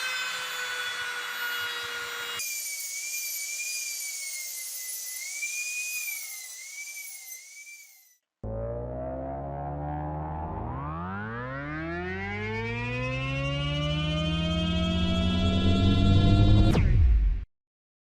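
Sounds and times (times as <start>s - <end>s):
power tool grinding wood: 0.0s - 8.1s.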